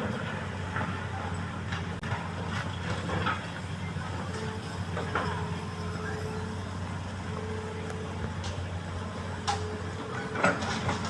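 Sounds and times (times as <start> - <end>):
excavator diesel engine running: 0.0 - 11.0.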